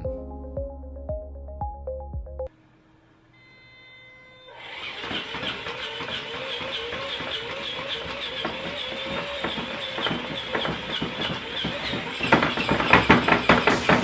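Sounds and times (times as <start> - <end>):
machine whirring and rattling: 4.6 - 14.0
knocks: 8.3 - 14.0.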